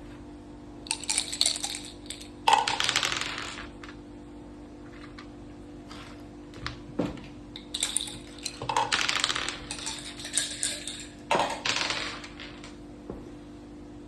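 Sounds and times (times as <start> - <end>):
dice clattering on a board: 0.9 - 4.0, 7.6 - 12.8.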